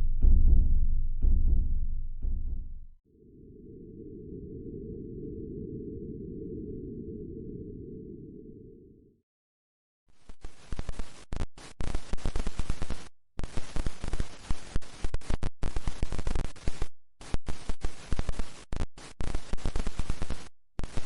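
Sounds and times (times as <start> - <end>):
harsh crackling static: 10.1 - 21.0.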